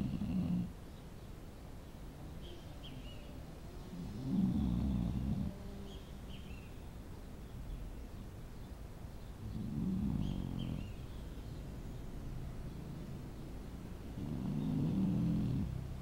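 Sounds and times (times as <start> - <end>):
dog snoring: 0.0 - 0.7, 4.0 - 5.6, 9.4 - 11.0, 14.1 - 15.9.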